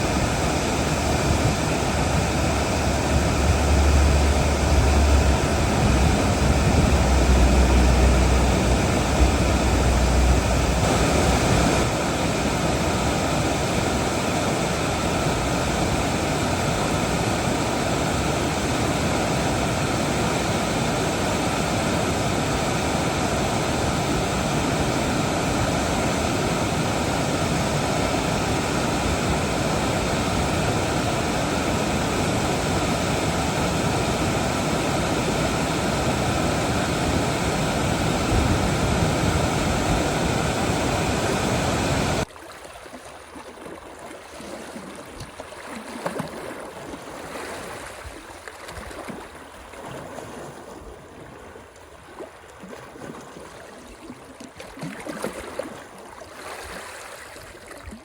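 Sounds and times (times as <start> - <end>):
water rushing: 0.0 - 58.0
low rumble: 1.1 - 11.9.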